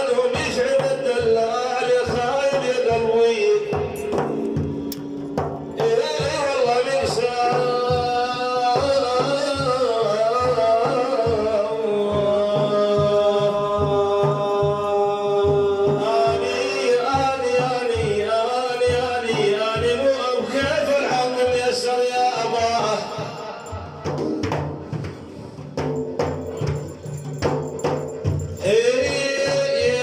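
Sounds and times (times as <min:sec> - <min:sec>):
man singing devotional chant: 0:00.0 - 0:04.2, 0:05.8 - 0:24.1, 0:28.6 - 0:30.0
hand drum beat: 0:00.2 - 0:30.0.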